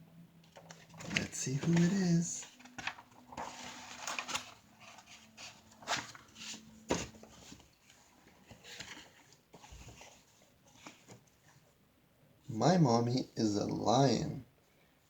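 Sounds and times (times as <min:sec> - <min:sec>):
book pages rustling: 0:00.5 - 0:11.6.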